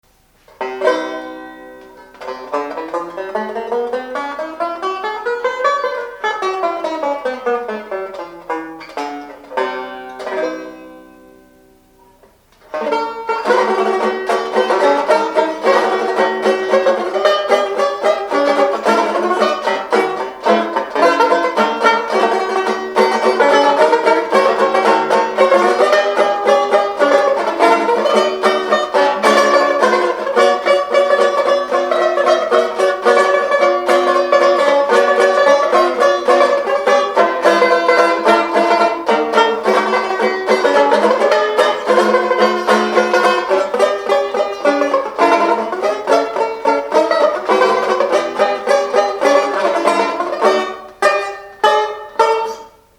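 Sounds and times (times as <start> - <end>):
banjo playing: 0.0 - 52.9.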